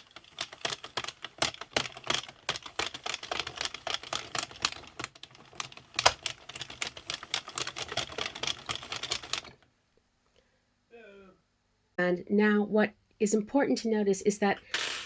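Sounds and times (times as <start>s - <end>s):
knitting machine needles clicking: 0.0s - 9.6s.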